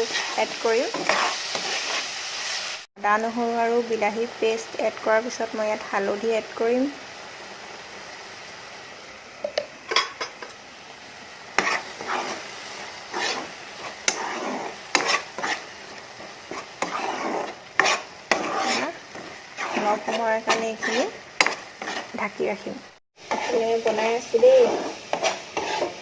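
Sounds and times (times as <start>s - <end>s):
spoon scraping and stirring: 0.0s - 2.6s, 11.6s - 22.3s, 23.2s - 26.0s
onions sizzling: 0.0s - 26.0s.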